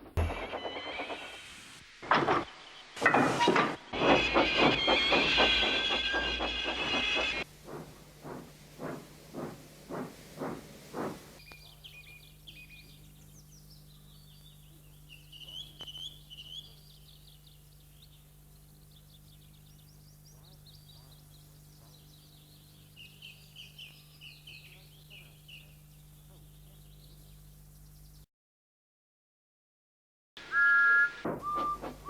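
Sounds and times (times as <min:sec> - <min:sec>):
steam locomotive chuffing: 0:00.0 - 0:11.4, 0:30.4 - 0:32.0
faint steady hum: 0:07.4 - 0:28.2
birds chirping and singing: 0:08.8 - 0:28.2.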